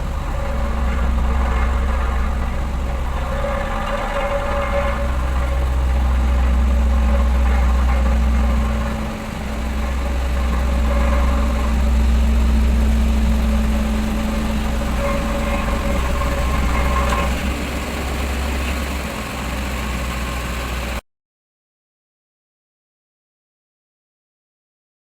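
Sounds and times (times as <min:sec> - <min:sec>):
road roller diesel engine droning: 0:00.0 - 0:21.0.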